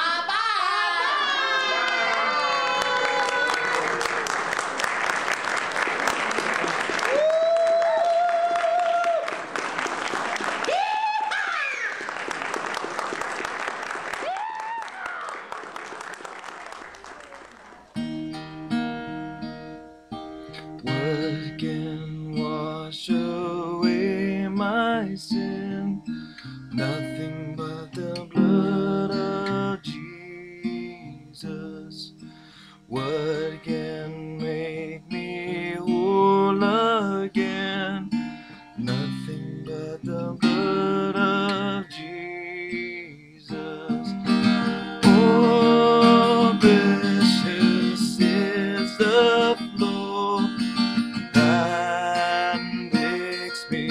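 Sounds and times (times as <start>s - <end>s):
strummed acoustic guitar music: 17.9s - 53.9s.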